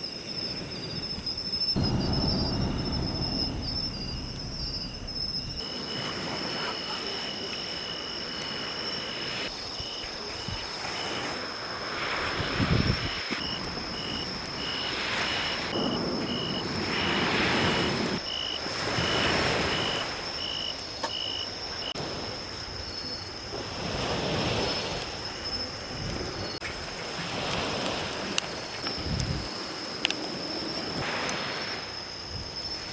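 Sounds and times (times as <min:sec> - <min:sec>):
insects trilling: 0:00.0 - 0:32.9
brief low rumble: 0:01.8 - 0:05.7
waves washing onto beach: 0:26.2 - 0:32.0.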